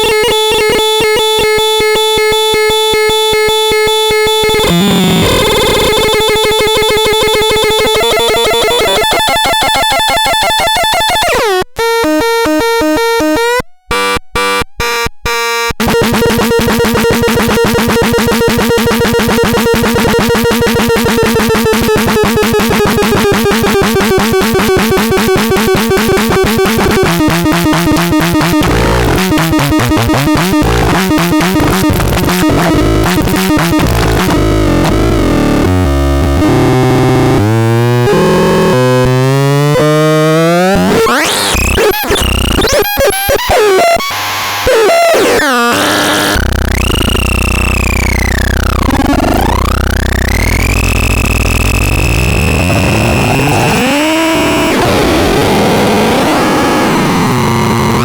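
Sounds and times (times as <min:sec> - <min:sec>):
stepping synth tones: 0:00.0 - 0:43.8, 0:44.7 - 0:58.0
fast-pulsing synth buzz: 0:15.8 - 0:35.2, 0:45.1 - 0:54.8.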